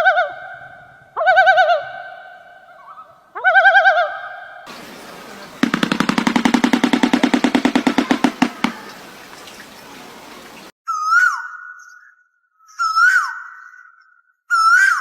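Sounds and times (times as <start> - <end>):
rapid rattle of taps: 4.7 - 10.7
whistled bird call: 4.7 - 11.4.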